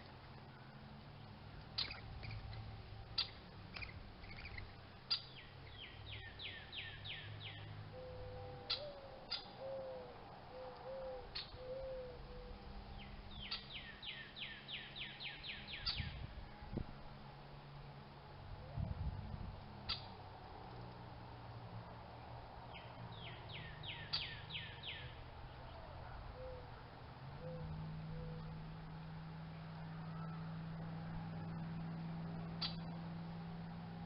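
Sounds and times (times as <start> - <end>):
wavering cooing call: 6.2 - 12.8, 25.7 - 29.1.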